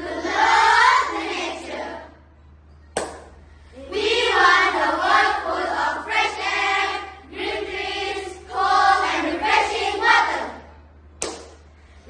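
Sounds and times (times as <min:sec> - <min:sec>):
children's voices in unison: 0:03.8 - 0:10.7.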